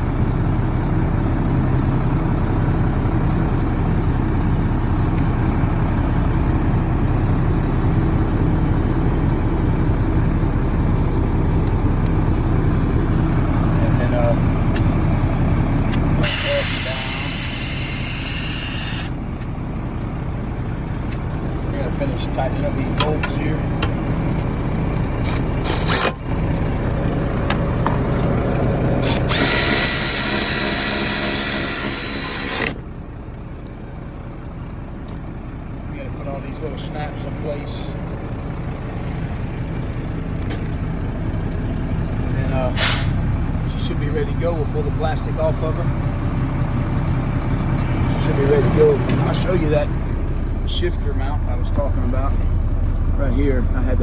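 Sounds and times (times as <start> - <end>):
diesel truck engine idling: 0.0 - 54.0
power drill driving bolts: 29.0 - 32.8.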